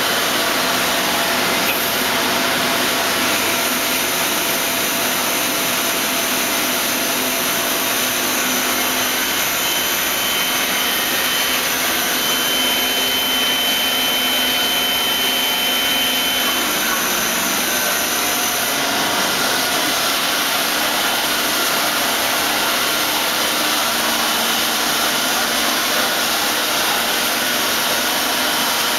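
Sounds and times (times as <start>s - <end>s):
machine hissing: 0.0s - 28.9s
faint high whistle: 9.0s - 17.0s.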